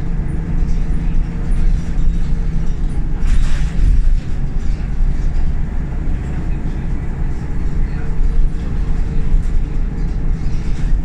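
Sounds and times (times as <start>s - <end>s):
bus diesel engine droning: 0.0s - 11.0s.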